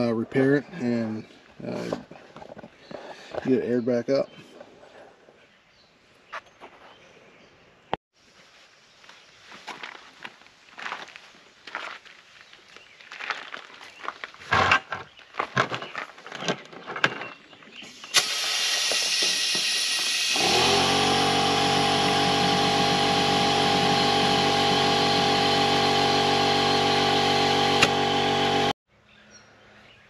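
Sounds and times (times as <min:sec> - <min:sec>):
handling noises and steps: 0:01.3 - 0:05.4, 0:08.4 - 0:18.0
loud hiss of air: 0:17.9 - 0:21.0
air compressor motor humming: 0:18.1 - 0:28.8.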